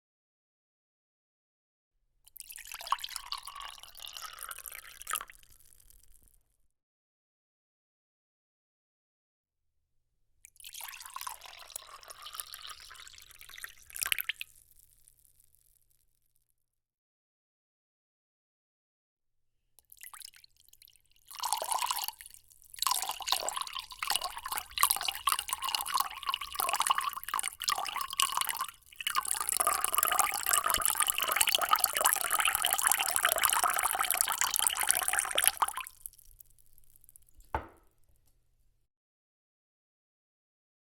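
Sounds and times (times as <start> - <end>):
water pouring into a glass: 2.3 - 5.9, 10.5 - 14.6, 19.9 - 37.8
water drip: 19.8 - 37.8.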